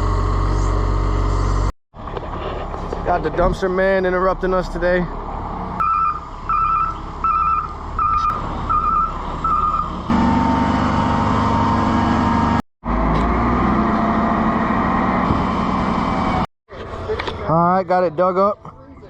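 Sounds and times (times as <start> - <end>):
heavy truck engine: 0.0 - 17.4
truck reverse alarm beeping: 5.8 - 10.1.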